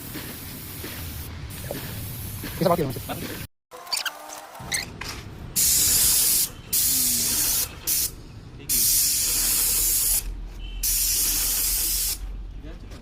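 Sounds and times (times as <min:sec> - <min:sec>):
paint spray gun hissing: 0:00.0 - 0:03.2, 0:05.6 - 0:08.1, 0:08.7 - 0:12.2.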